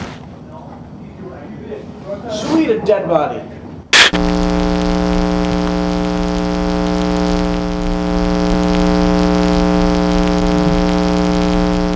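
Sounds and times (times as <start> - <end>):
steady droning hum: 4.0 - 11.9.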